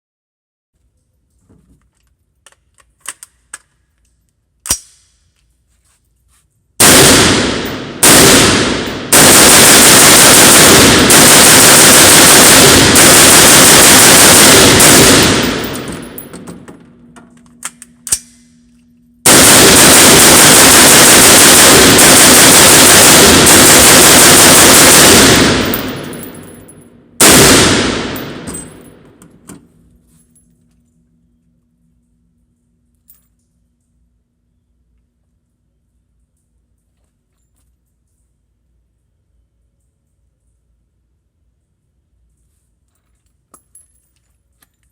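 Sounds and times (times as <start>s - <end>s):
rifle gunshots: 6.8s - 16.6s, 19.3s - 26.4s, 27.2s - 29.1s.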